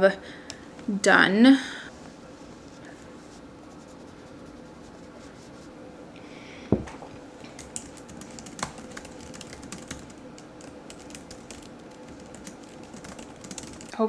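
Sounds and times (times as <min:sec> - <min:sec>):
thump: 0:06.7 - 0:07.1
computer keyboard typing: 0:07.4 - 0:14.0.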